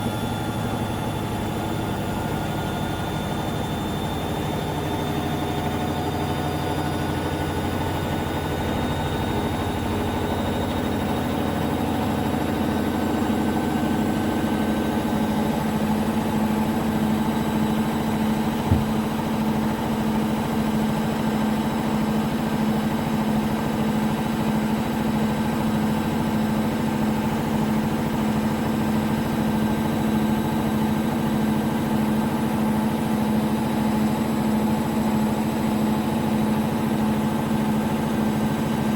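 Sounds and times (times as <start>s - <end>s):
washing machine spinning: 0.0s - 21.4s
knock: 18.7s - 19.0s.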